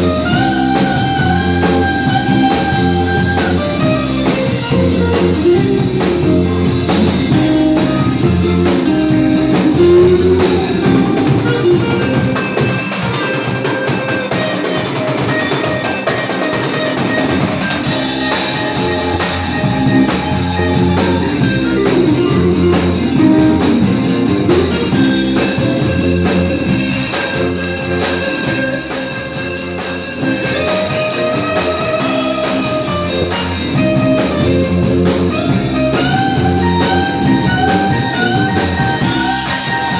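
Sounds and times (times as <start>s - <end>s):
drum kit: 0.0s - 39.9s
guitar: 0.0s - 39.9s
rock band playing: 0.0s - 39.9s.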